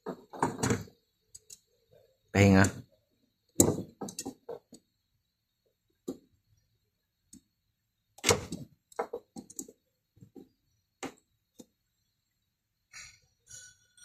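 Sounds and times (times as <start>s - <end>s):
hard objects knocking and clunking: 0.0s - 1.1s, 3.5s - 5.0s, 8.2s - 11.8s.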